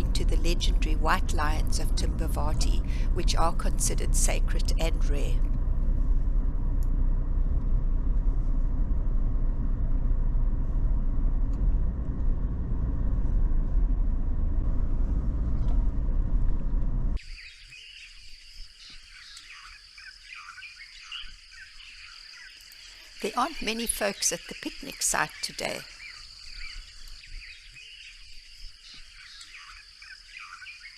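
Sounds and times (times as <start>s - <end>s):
car driving on a road: 0.0s - 17.2s
insect chirps: 17.2s - 30.9s.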